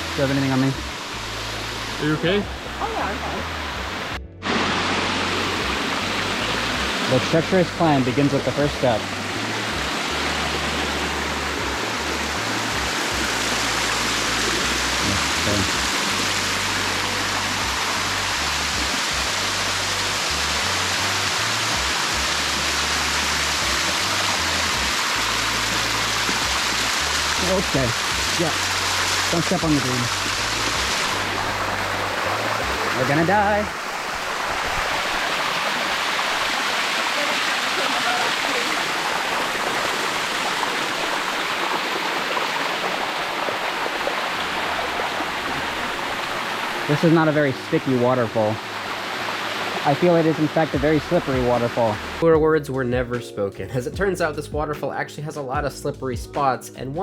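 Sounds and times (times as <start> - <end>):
waterfall rushing over rock: 0.0 - 52.2.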